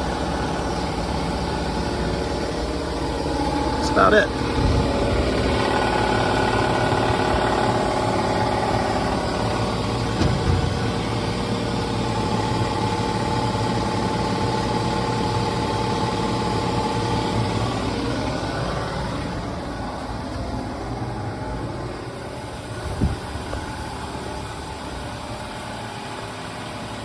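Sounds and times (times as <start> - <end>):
steady tones: 0.0 - 13.0
shop machinery humming: 0.0 - 27.0
brief knock: 10.2 - 10.9.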